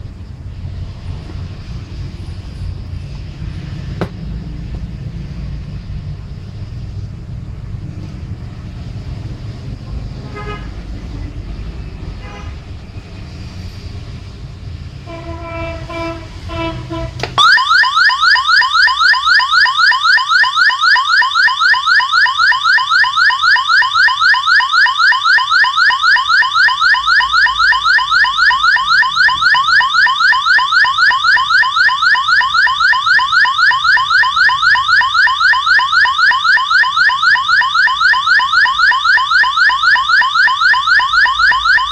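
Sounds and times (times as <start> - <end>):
siren-like sweeping tone: 10.8 - 41.9.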